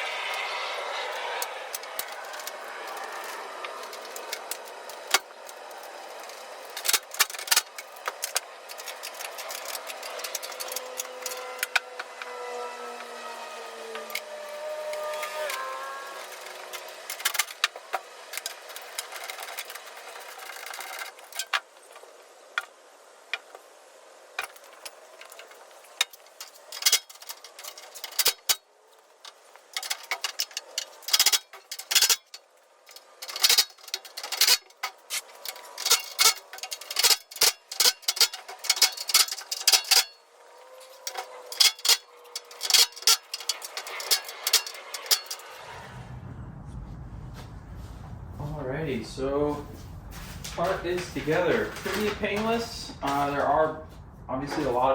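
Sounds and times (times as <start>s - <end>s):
metal tools clattering: 50.1s - 53.6s.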